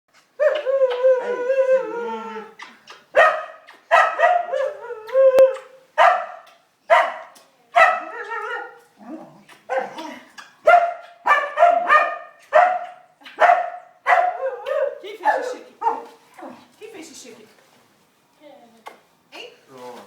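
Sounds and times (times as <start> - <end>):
dog howling: 0.4 - 2.6, 4.2 - 5.7, 14.3 - 15.0.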